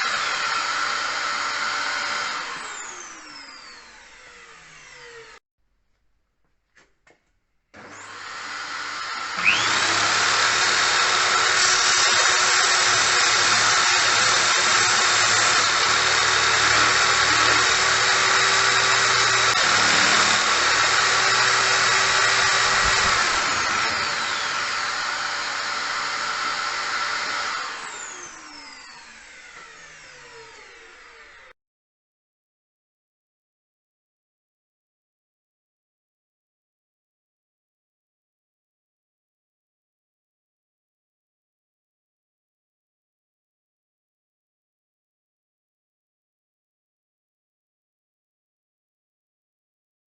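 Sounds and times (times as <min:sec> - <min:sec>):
electric drill motor whining: 0:00.0 - 0:05.4, 0:07.8 - 0:31.5.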